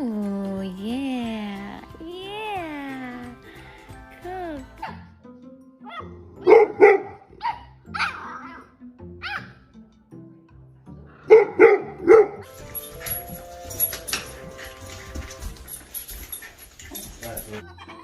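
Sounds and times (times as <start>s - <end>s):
dog barking: 5.9s - 8.6s, 9.2s - 9.6s, 11.3s - 12.5s.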